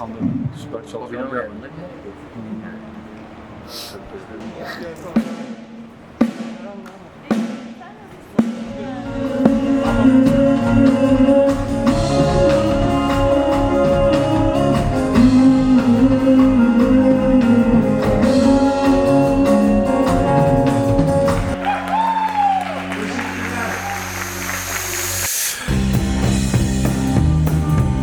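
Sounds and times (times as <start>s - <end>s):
band music: 0.0s - 28.0s
steady drum beat: 5.1s - 21.6s, 23.1s - 28.0s.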